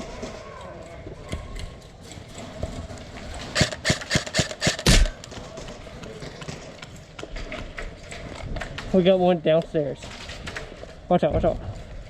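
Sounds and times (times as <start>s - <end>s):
airsoft gun shots: 3.6s - 5.2s.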